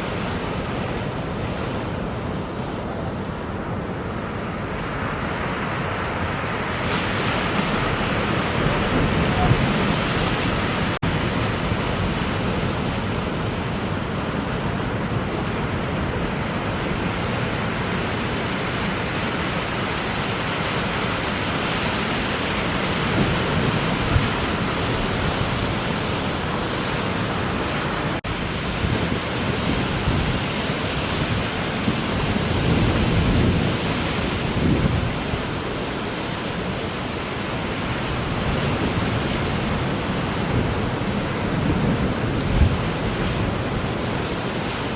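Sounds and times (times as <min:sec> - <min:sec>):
ocean surf breaking: 0:00.0 - 0:44.9
wind buffeting microphone: 0:04.6 - 0:16.2, 0:22.6 - 0:36.8, 0:37.5 - 0:44.9.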